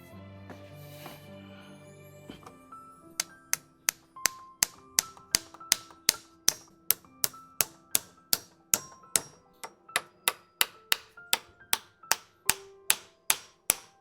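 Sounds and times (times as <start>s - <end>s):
background music: 0.0s - 14.0s
hammer driving nails into wood: 3.2s - 14.0s.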